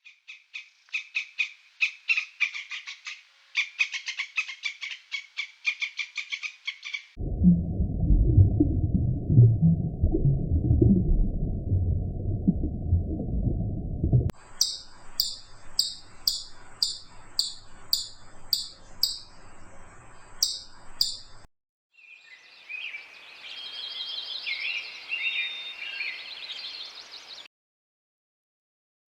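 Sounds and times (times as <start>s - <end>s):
songbird warbling: 0.0s - 7.2s, 14.4s - 21.4s, 22.2s - 27.4s
low rumble: 7.2s - 15.0s
small animal chirping: 14.4s - 19.3s, 20.4s - 21.4s
background hiss: 14.4s - 21.5s.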